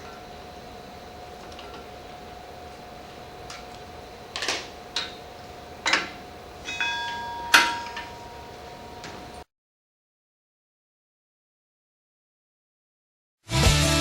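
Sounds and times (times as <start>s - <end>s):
faint steady hum: 0.0s - 9.4s
metal tools clinking: 5.8s - 9.4s.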